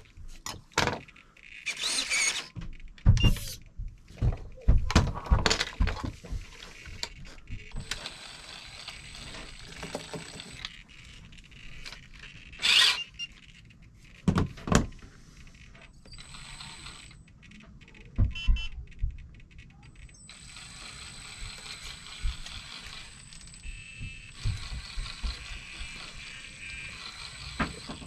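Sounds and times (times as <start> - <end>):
small parts and tools clicking: 0.0 - 4.7, 5.4 - 28.0
faint high whine: 19.6 - 28.0.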